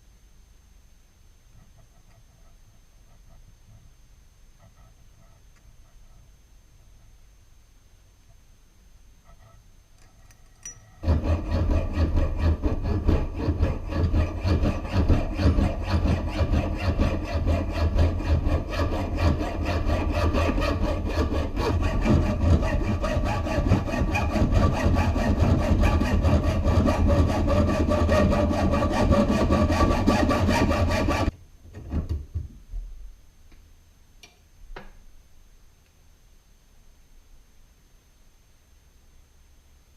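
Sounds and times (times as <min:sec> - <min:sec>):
machine tool rasping through metal: 0:10.7 - 0:31.3.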